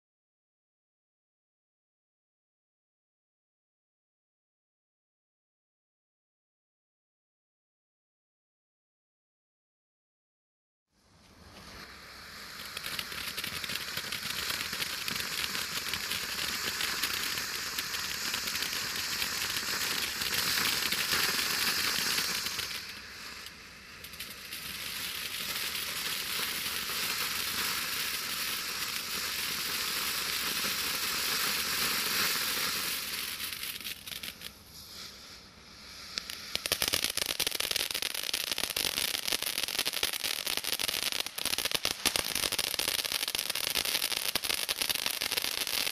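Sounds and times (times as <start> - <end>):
firework crackling: 11.0 - 45.9
firework fountain hissing: 11.0 - 45.9.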